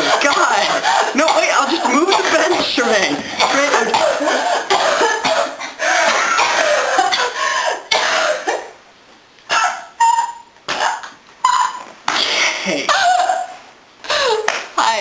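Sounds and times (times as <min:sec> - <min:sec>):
woman coughing: 0:00.0 - 0:08.8, 0:12.8 - 0:13.5.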